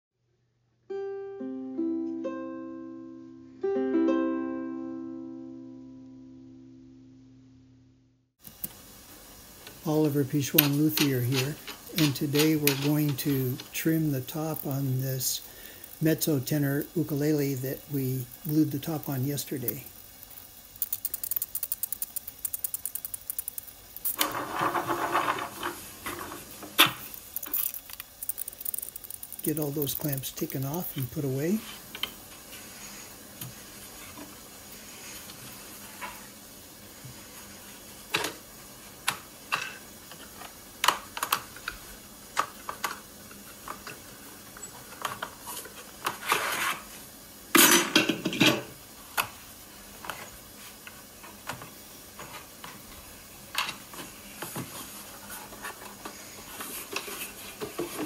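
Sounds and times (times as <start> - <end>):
ukulele plucked: 0.9 - 6.8
clamps clattering: 10.6 - 13.8
clamps ratcheting clicks: 20.8 - 24.2, 27.0 - 31.0.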